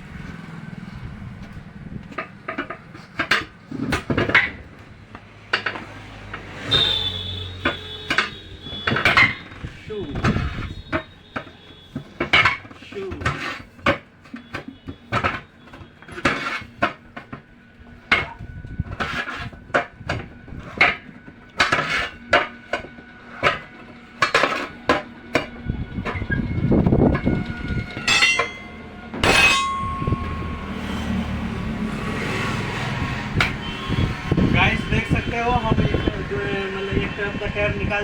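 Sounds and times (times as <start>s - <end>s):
tyre levers clanking on steel rim: 5.5s - 17.5s, 27.9s - 31.2s.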